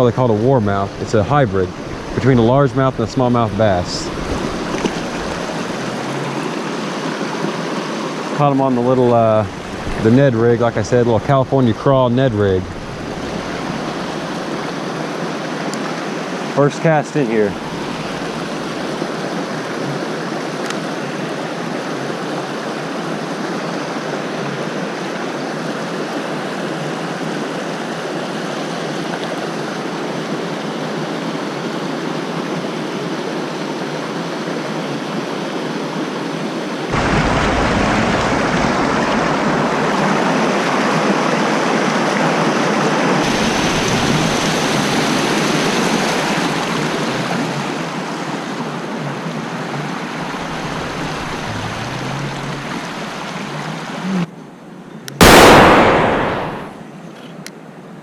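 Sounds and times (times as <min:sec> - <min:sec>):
creek water rushing: 0:00.0 - 0:56.8
deep rumble: 0:36.9 - 0:39.6, 0:50.2 - 0:53.2.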